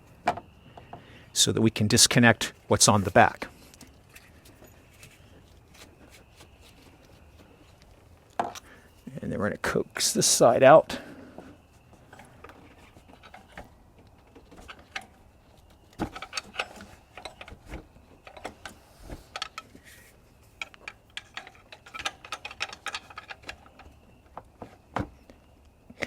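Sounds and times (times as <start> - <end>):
metallic clicks and knocks: 12.1 - 19.8, 20.5 - 24.8.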